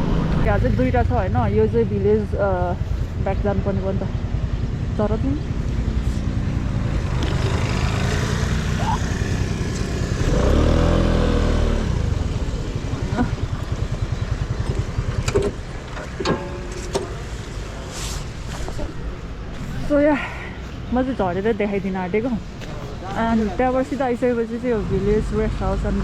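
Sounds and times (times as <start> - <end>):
scooter engine running: 4.2 - 16.7.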